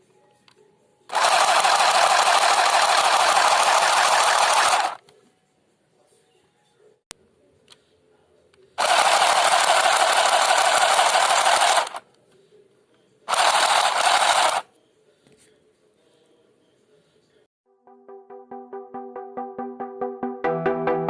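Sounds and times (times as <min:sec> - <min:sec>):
handheld sewing machine running: 0:01.1 - 0:05.0, 0:08.8 - 0:12.0, 0:13.3 - 0:14.6.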